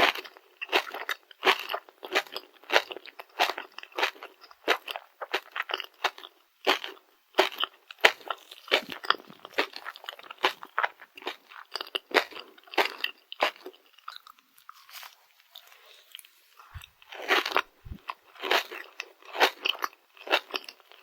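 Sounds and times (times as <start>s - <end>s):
crunchy chewing: 0.0s - 21.0s.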